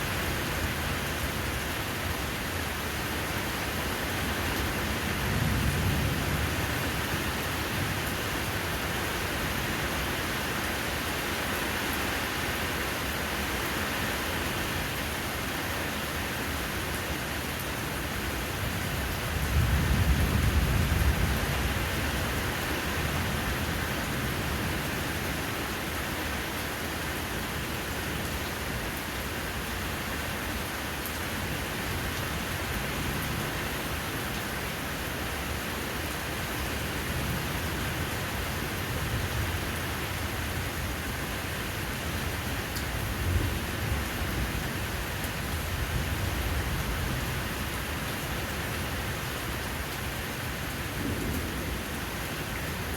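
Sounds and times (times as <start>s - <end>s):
steady rain falling: 0.0s - 52.9s.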